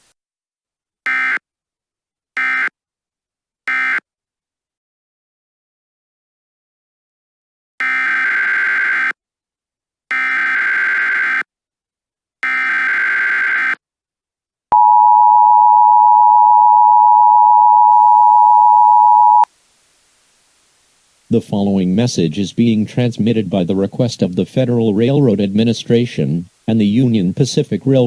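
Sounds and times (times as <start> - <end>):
steady two-tone attention signal: 14.8 - 19.5.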